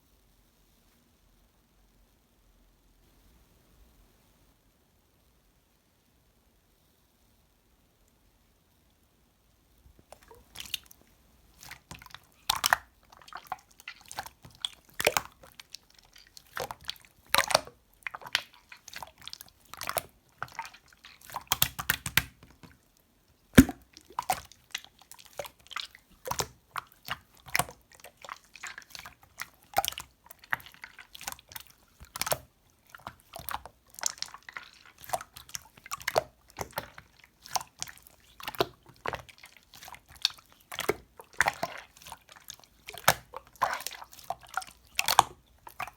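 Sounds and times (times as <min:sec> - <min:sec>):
slime squished wet clicks and pops: 0:11.6 - 0:12.9, 0:19.7 - 0:22.8, 0:23.6 - 0:25.5, 0:29.8 - 0:42.1, 0:42.9 - 0:45.9.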